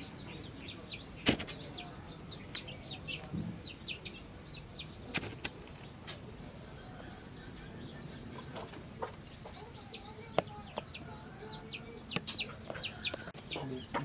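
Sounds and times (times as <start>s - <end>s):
small birds chirping: 0.0s - 14.0s
sharp clicks or knocks: 1.2s - 1.6s.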